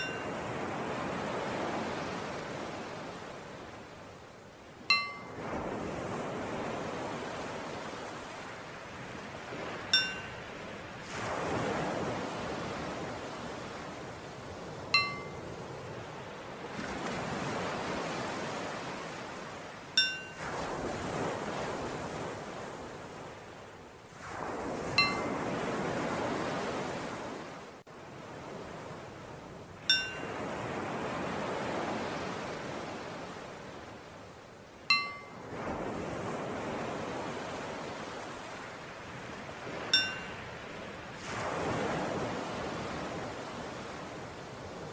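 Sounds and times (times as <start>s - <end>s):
small bell struck: 0.0s - 0.4s, 4.9s - 5.4s, 9.9s - 10.4s, 15.0s - 15.4s, 20.0s - 20.4s, 25.0s - 25.3s, 29.9s - 30.3s, 34.9s - 35.4s, 39.9s - 40.4s
ocean waves washing: 0.0s - 44.9s.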